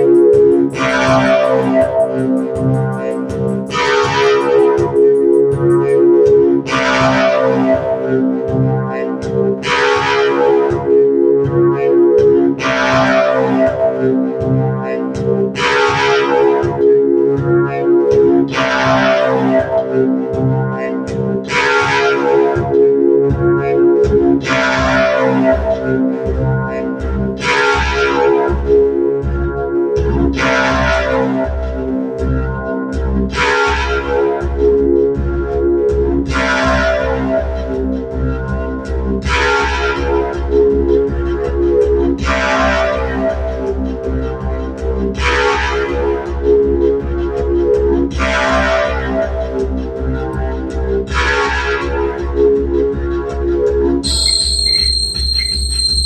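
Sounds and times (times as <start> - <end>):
low pulsing beat: 0.0 - 21.6, 22.6 - 56.0
held synth chords: 0.0 - 27.3, 54.0 - 56.0.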